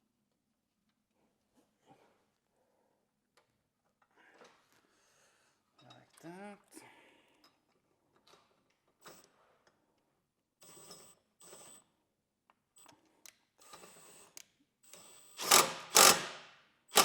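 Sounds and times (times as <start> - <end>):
hand tools clicking and scraping: 15.4 - 17.0.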